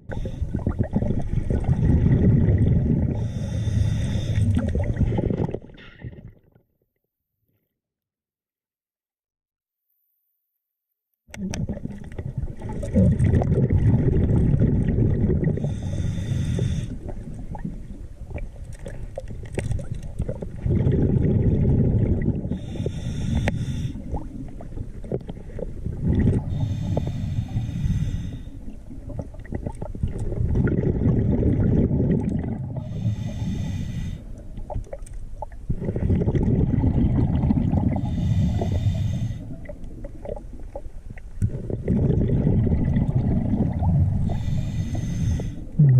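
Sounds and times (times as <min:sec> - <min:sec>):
hissing inhale through regulator: 0:00.0 - 0:00.7, 0:03.1 - 0:04.6, 0:15.5 - 0:17.2, 0:22.5 - 0:24.3, 0:26.4 - 0:28.8, 0:32.8 - 0:34.4, 0:37.9 - 0:39.7, 0:44.1 - 0:45.8
bubbling exhale: 0:00.0 - 0:06.4, 0:11.4 - 0:17.8, 0:20.2 - 0:34.5, 0:35.7 - 0:40.5, 0:41.4 - 0:45.9.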